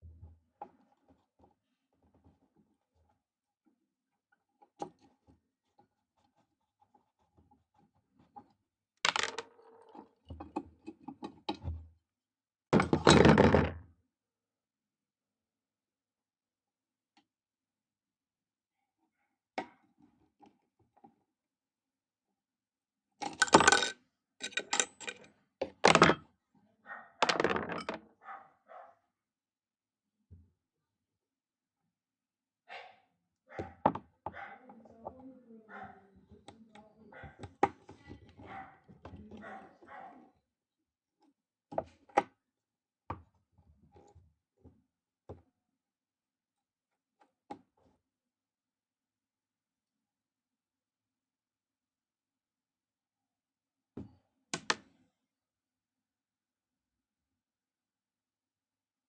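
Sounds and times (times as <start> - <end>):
clicks and knocks of tools: 23.2 - 26.1.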